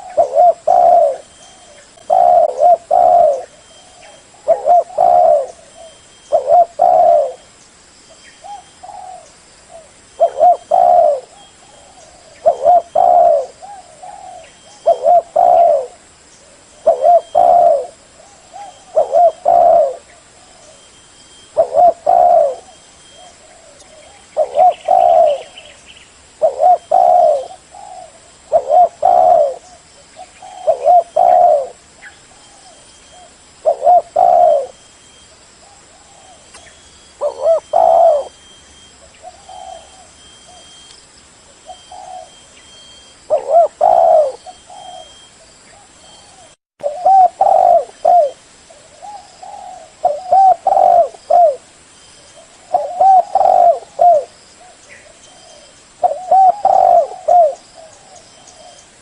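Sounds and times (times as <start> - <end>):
dove cooing: 0.0 - 7.5, 8.4 - 25.8, 26.4 - 40.9, 41.6 - 59.0.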